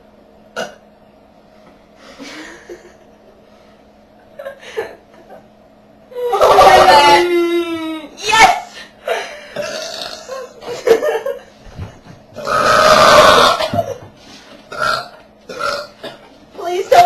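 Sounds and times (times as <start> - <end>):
girl burping: 0.6 - 0.8, 9.5 - 10.5, 12.4 - 13.8, 14.7 - 16.2.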